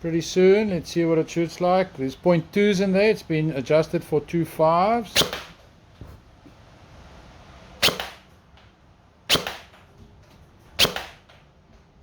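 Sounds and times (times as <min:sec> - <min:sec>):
airsoft gun firing single shots: 0:05.2 - 0:05.6, 0:07.8 - 0:08.3, 0:09.3 - 0:09.8, 0:10.8 - 0:11.4.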